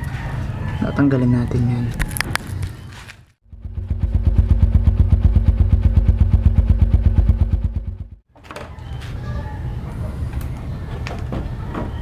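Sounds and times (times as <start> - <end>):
motorcycle idling: 3.4 - 8.2.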